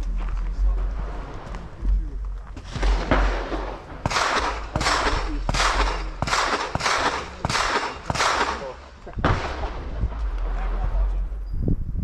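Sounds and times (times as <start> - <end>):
gunshots with echo: 2.6 - 11.4.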